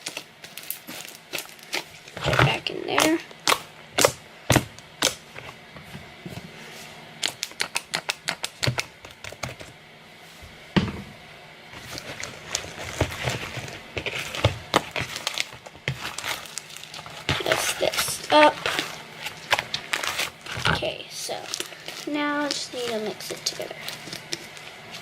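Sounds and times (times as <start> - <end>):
slime squishing with sticky pops: 0.0 - 5.2, 7.2 - 9.7, 14.0 - 25.0.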